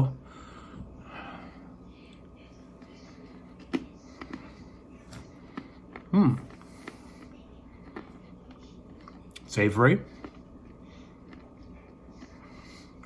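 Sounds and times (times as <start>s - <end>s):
almond crunching: 3.6s - 12.8s.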